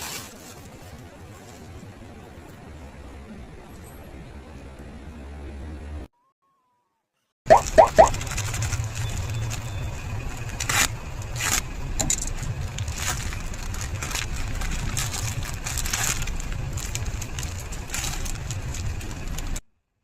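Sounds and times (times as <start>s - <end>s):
packaging crinkling: 7.6s - 19.6s
steady low rumble: 7.6s - 19.6s.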